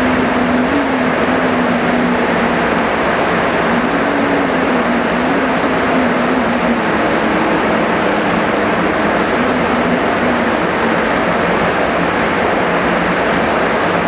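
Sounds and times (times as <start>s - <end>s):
heavy rain hissing: 0.0s - 14.0s
low wavering hum: 0.0s - 14.0s.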